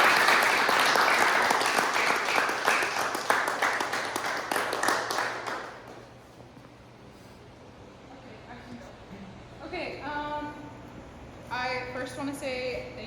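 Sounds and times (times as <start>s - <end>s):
people applauding: 0.0s - 6.2s.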